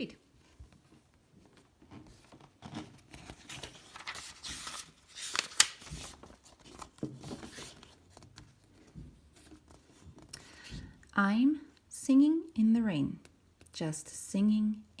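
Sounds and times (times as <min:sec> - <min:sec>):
paper pages rustling: 0:00.5 - 0:10.7.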